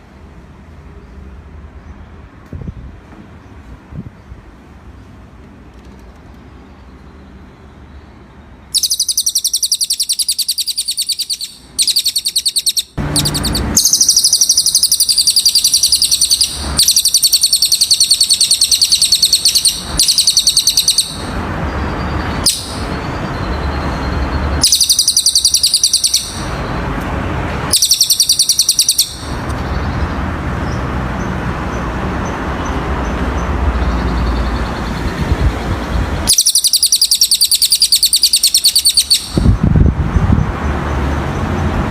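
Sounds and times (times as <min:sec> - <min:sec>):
bird singing high trill: 0:08.6 - 0:26.8, 0:27.7 - 0:30.2, 0:35.8 - 0:39.6.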